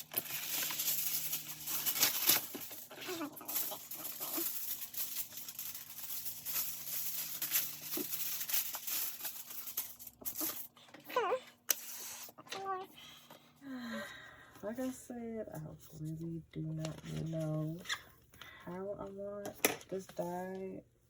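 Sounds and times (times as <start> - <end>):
rustling handling noise: 0.0 - 13.5.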